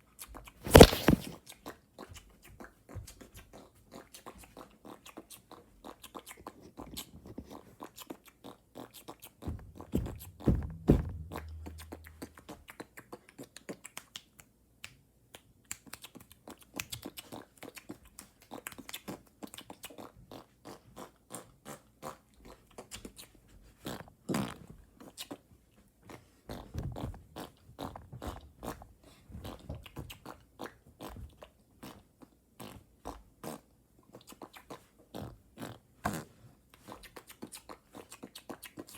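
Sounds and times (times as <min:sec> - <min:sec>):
wet mouth clicks and smacks: 0:13.5 - 0:20.1.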